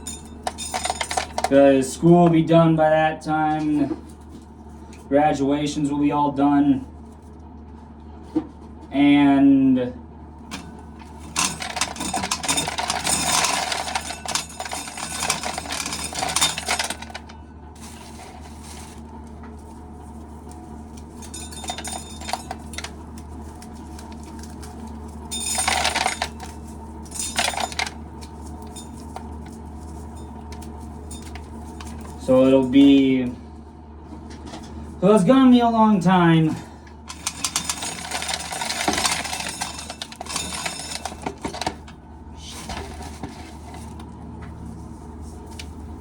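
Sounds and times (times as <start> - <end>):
steady low hum: 0.0 - 46.0
corn kernels clattering into bucket: 11.2 - 19.0, 24.3 - 29.3, 37.1 - 41.8.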